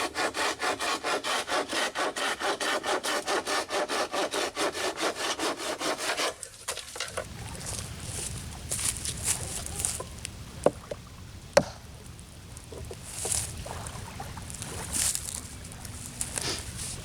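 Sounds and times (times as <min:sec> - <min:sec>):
hand scraping wood: 0:00.0 - 0:17.0
sharp knocks: 0:10.0 - 0:13.4.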